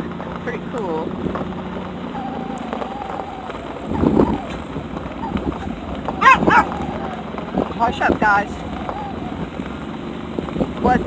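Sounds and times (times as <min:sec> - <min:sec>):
low rumble of car: 0:00.0 - 0:11.0
dog whining: 0:02.0 - 0:07.3, 0:08.6 - 0:09.6.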